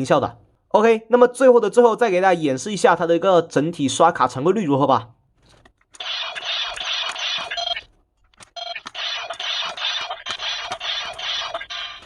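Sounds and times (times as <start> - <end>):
toy electronic sound effects: 6.0 - 7.9, 8.6 - 12.0.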